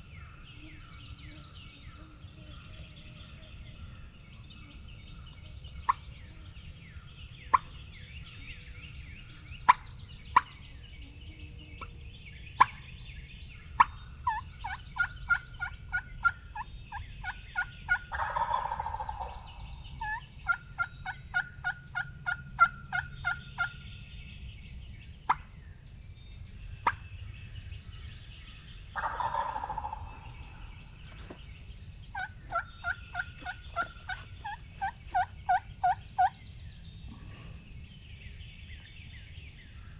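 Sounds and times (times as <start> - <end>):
turkey gobbling: 13.8 - 23.8, 29.0 - 30.9, 32.1 - 36.4
turkey call notes: 29.0 - 30.8, 32.1 - 36.3.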